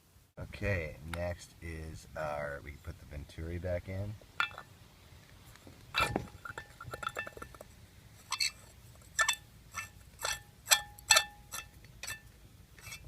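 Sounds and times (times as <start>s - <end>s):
metal parts clinking: 8.3s - 12.2s.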